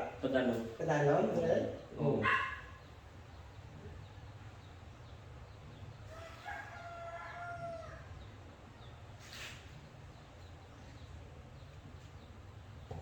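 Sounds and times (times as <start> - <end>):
rooster crowing: 6.1 - 8.2.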